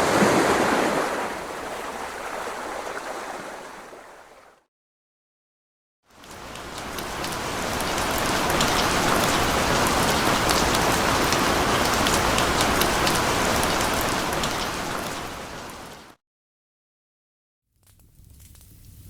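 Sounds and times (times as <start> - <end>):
steady rain falling: 6.2 - 16.2.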